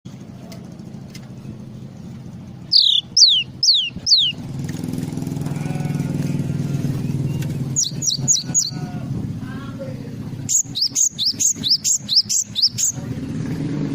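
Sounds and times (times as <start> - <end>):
low engine-like hum: 0.1 - 13.9
bird whistling: 2.7 - 4.4, 7.3 - 8.8, 10.5 - 13.0.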